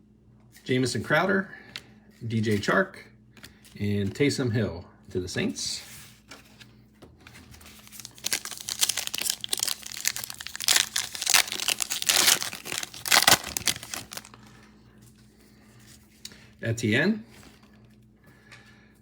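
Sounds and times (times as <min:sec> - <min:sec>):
wrapper crinkling and tearing: 0:07.7 - 0:14.4.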